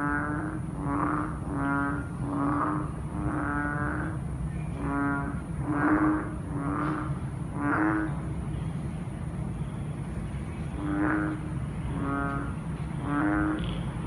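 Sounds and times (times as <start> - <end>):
frogs croaking: 0.0 - 14.0.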